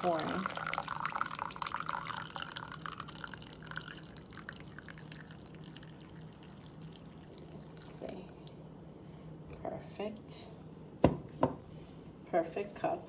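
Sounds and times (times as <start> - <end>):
coffee pouring into cup: 0.0 - 8.6
faint drips: 0.0 - 9.2.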